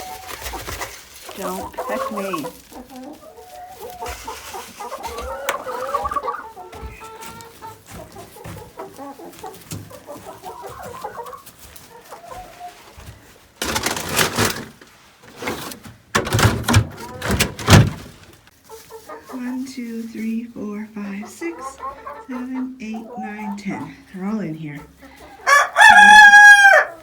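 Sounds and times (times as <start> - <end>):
loud rustling and scraping: 0.0 - 5.4, 6.8 - 18.9
hens clucking: 0.0 - 27.0.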